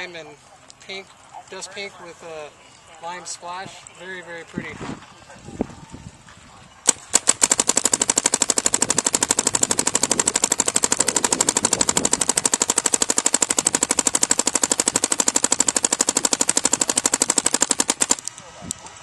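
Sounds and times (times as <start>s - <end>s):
paintball marker rapid firing: 6.9s - 18.4s.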